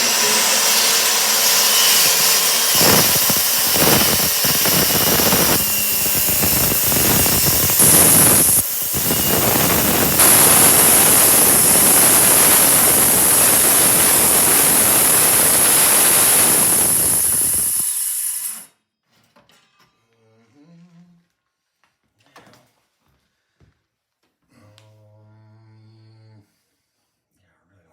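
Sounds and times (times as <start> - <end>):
power saw cutting wood: 0.0 - 18.7.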